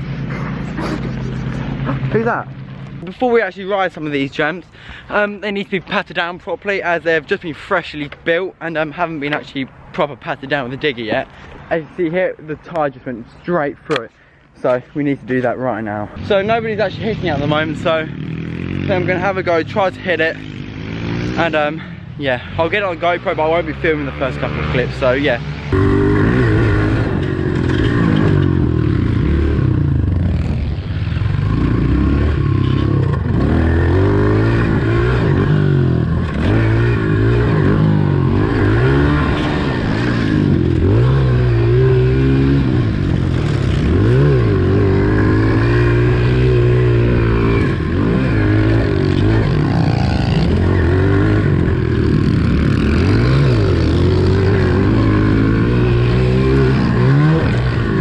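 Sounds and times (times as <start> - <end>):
motorbike engine revving: 0.0 - 3.1, 16.2 - 58.0.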